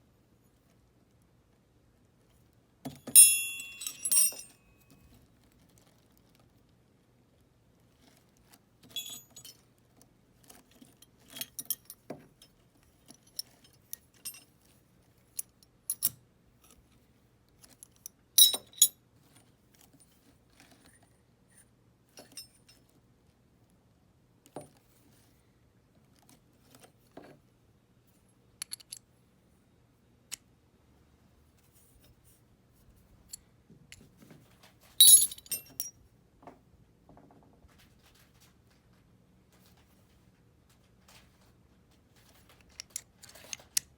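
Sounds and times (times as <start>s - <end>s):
metal hand tools clinking: 2.9s - 4.8s, 8.9s - 9.6s, 18.4s - 18.9s, 35.0s - 35.9s.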